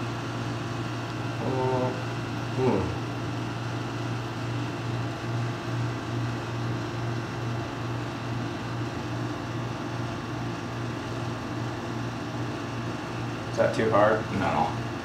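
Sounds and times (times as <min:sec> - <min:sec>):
electric massager motor humming: 0:00.0 - 0:10.0.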